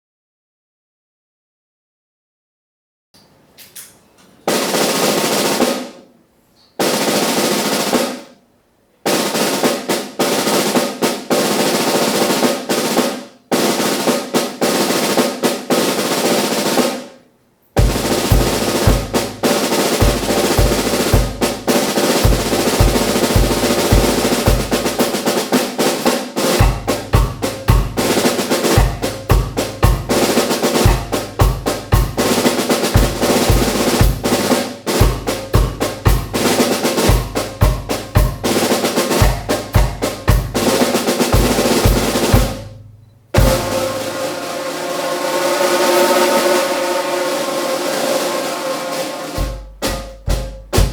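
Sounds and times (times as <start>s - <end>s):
snare drum rolls: 4.5s - 6.1s, 6.8s - 8.4s, 9.1s - 17.2s, 17.8s - 50.9s
bass drum kicks: 26.6s - 28.1s, 30.9s - 32.3s, 41.4s - 44.0s, 49.4s - 50.9s.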